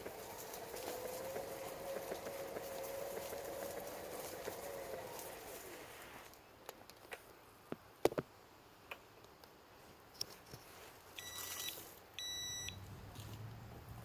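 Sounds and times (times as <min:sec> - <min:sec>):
short electronic beeps: 0:11.2 - 0:12.8.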